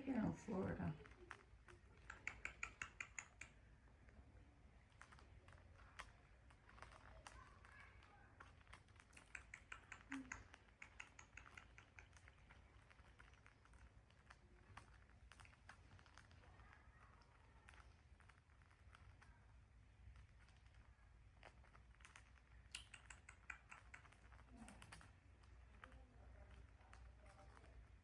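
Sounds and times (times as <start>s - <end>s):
parrot beak clicking on metal: 1.2s - 3.6s, 8.5s - 13.4s, 22.6s - 25.0s.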